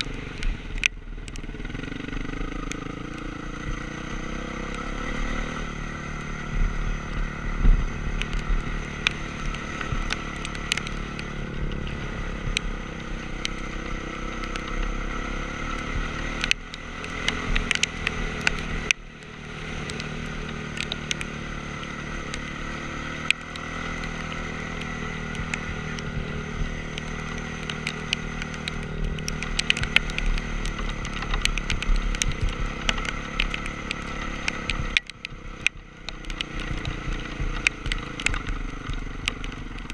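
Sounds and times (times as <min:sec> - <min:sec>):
motorbike engine running: 0:00.0 - 0:39.9
clicks and clatter: 0:19.8 - 0:39.9.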